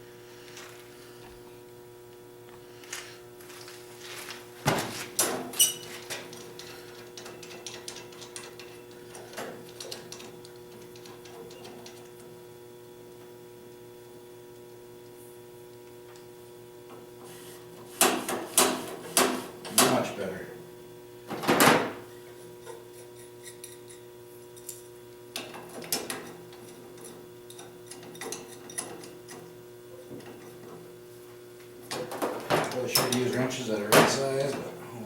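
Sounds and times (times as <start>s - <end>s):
steady electrical hum: 0.0s - 35.0s
hand tools clinking on metal: 32.6s - 34.7s.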